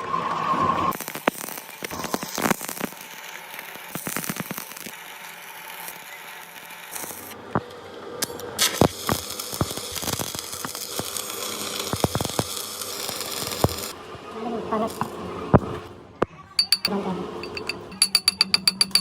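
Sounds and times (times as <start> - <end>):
steady hiss: 8.6 - 13.9
sharp metal clicks and knocks: 16.6 - 19.0.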